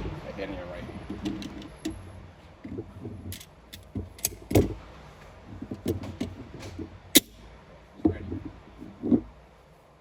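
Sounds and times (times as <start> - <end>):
sharp metallic clicks: 6.6 - 7.5.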